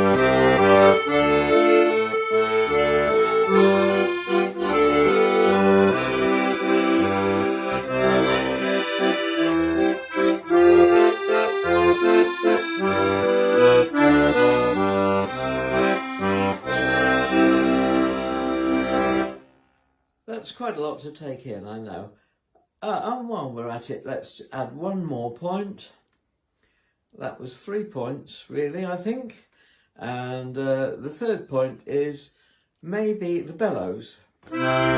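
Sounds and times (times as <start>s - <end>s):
accordion playing: 0.0s - 19.5s, 34.4s - 34.9s.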